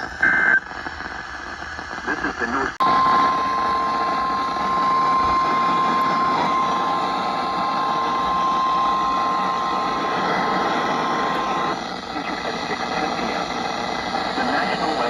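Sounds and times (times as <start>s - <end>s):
radio static hiss: 0.0s - 15.0s
steady alarm beep: 2.8s - 11.8s.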